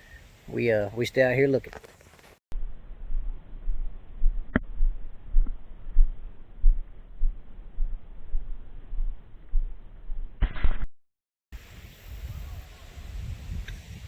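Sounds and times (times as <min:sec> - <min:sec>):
sharp click: 0:10.4 - 0:10.9
wind buffeting microphone: 0:11.6 - 0:14.0.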